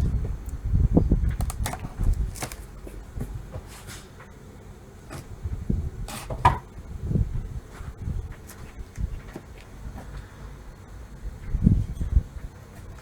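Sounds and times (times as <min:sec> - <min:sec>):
wind rumble on microphone: 0:00.0 - 0:03.6, 0:05.2 - 0:10.2, 0:11.2 - 0:13.0.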